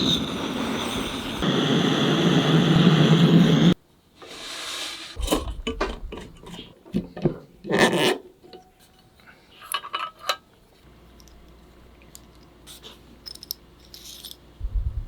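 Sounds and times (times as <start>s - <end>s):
faint hiss: 0.0s - 5.6s
blowtorch rushing flame: 0.0s - 5.7s
clicks and knocks of metal parts: 9.6s - 10.5s.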